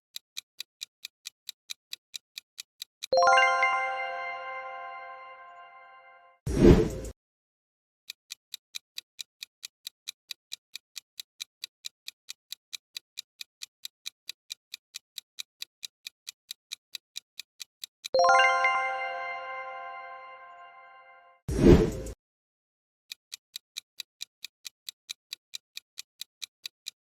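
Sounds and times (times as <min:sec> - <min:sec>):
clock-like ticks: 0:00.1 - 0:05.7, 0:08.1 - 0:20.7, 0:21.6 - 0:22.2, 0:23.1 - 0:27.0
bright chime ringing: 0:03.2 - 0:06.4, 0:18.2 - 0:21.4.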